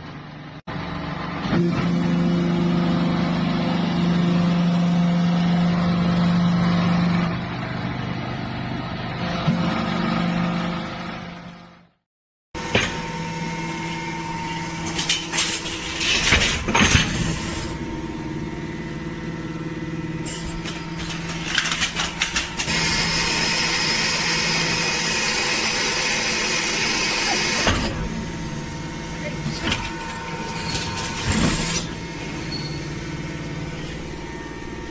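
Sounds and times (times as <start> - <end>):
hydraulic baler hum: 12.6 - 34.9.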